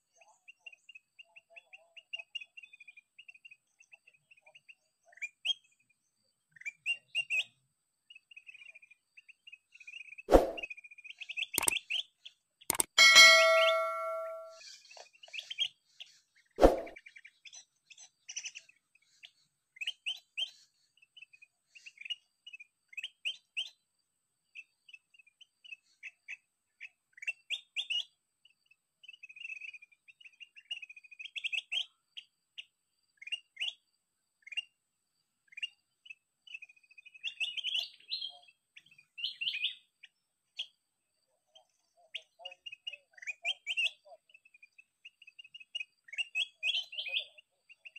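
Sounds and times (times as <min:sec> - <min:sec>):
bird chirping: 0:00.2 - 0:23.8, 0:35.5 - 0:40.8, 0:41.5 - 0:47.9
sharp knock with ringing tone: 0:12.8 - 0:14.6.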